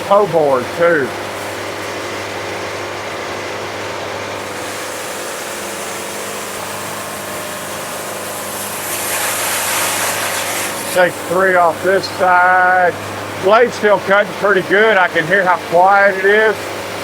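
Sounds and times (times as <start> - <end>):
band sawmill motor humming: 0.0 - 17.0
sawmill hiss: 4.4 - 16.9.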